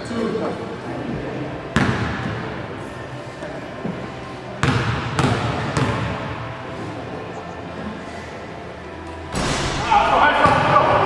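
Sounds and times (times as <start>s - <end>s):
basketball bouncing on gym floor: 4.6s - 6.2s.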